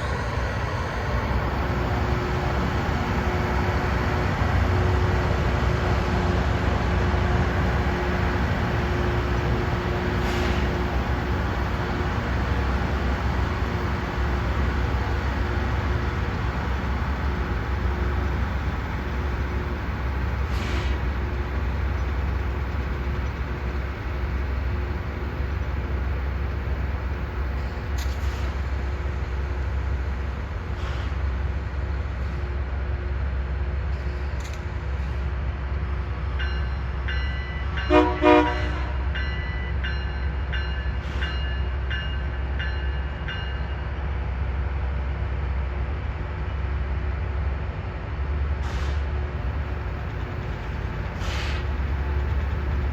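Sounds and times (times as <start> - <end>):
rail machine rumbling: 0.0 - 52.9
horn toots: 37.9 - 39.0.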